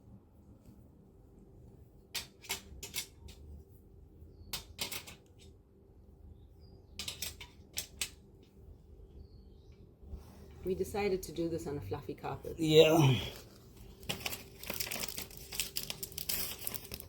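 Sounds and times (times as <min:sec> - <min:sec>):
hard parts clicking and knocking: 0:07.0 - 0:08.2.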